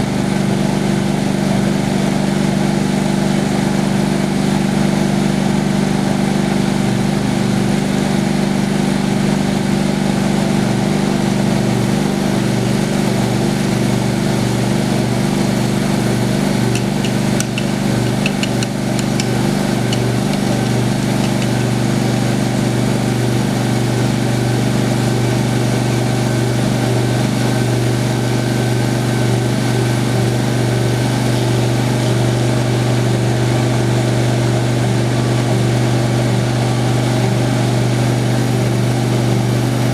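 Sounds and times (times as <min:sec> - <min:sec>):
sawmill engine running: 0:13.2 - 0:33.8
light ticks: 0:16.8 - 0:21.7.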